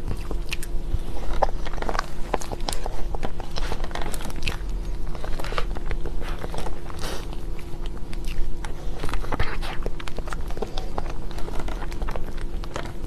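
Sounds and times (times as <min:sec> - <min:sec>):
person biting and chewing cake: 0:00.0 - 0:13.0.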